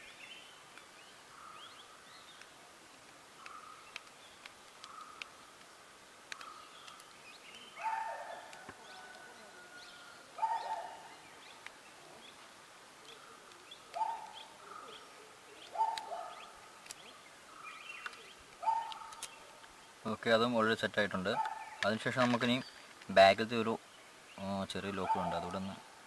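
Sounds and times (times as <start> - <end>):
bird calling: 0.0 - 26.0
faint sharp clicks: 0.7 - 0.9, 2.3 - 7.8, 10.3 - 15.0, 15.6 - 19.8.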